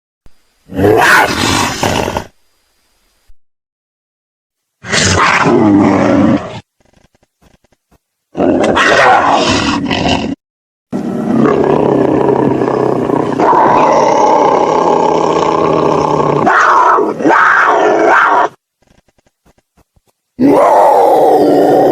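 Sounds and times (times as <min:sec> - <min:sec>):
monster roar: 0:08.4 - 0:10.4, 0:11.0 - 0:18.6, 0:20.4 - 0:21.9.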